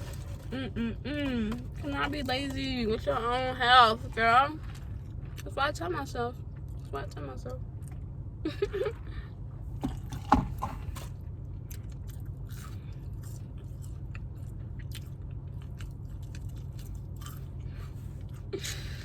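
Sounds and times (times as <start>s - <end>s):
steady low hum: 0.0s - 19.0s
person chewing and crunching food: 6.4s - 8.2s, 8.8s - 19.0s.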